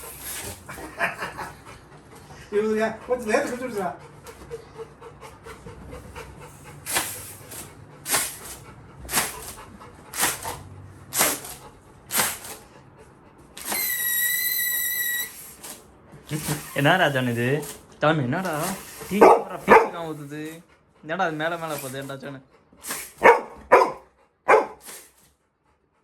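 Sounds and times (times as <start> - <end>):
squeeze toy puffs of air: 6.8 - 12.7, 13.6 - 17.8, 18.5 - 19.2, 22.8 - 23.2, 24.7 - 25.3
high-pitched squeak: 13.6 - 15.6.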